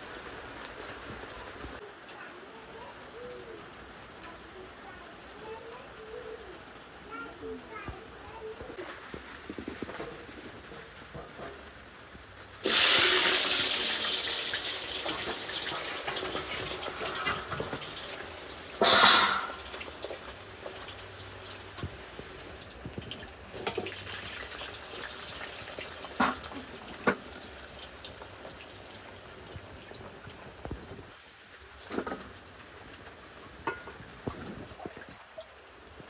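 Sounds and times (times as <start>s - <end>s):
hot oil sizzling: 0.0s - 36.0s
oil spitting and crackling: 8.7s - 36.0s.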